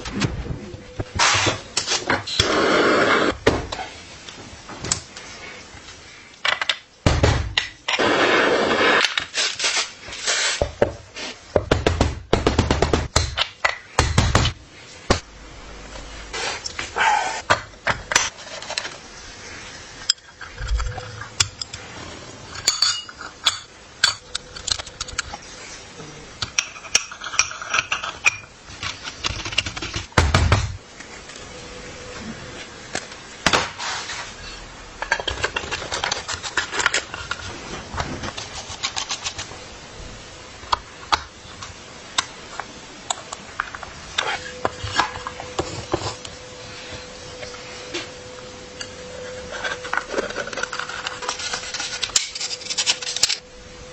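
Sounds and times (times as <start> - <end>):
heavy thumps: 7.0 - 7.7
metal tools clinking: 22.5 - 24.3.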